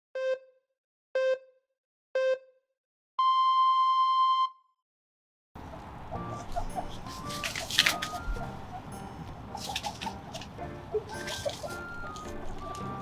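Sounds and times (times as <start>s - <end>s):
electronic countdown beeps: 0.2s - 0.6s, 1.2s - 1.6s, 2.2s - 2.5s, 3.2s - 4.6s.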